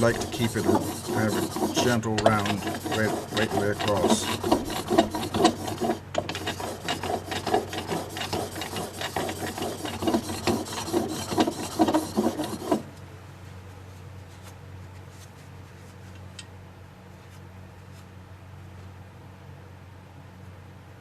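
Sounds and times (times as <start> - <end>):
blade rubbing on sharpening stone: 0.0 - 12.8.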